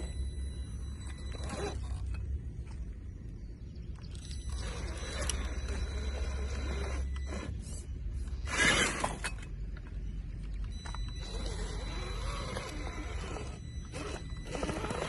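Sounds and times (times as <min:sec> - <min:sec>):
electric motor whine: 0:01.0 - 0:02.1, 0:04.4 - 0:09.2, 0:10.8 - 0:15.0.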